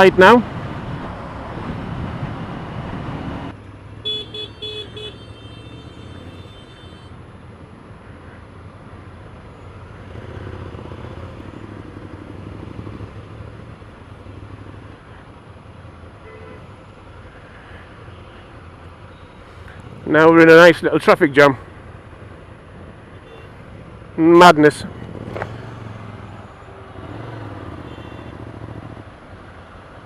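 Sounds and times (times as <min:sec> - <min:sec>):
engines in slow road traffic: 0:00.0 - 0:30.0
vehicle horn honking: 0:04.0 - 0:07.1, 0:16.2 - 0:16.7, 0:23.2 - 0:23.6, 0:27.8 - 0:28.4.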